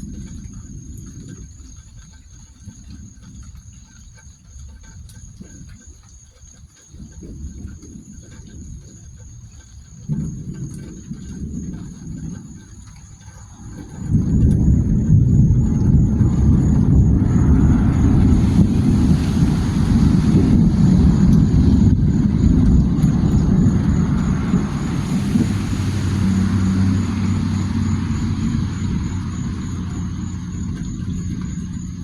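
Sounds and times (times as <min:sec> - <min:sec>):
vehicle engine rumble: 0:10.1 - 0:32.0
steady hum: 0:13.9 - 0:32.0.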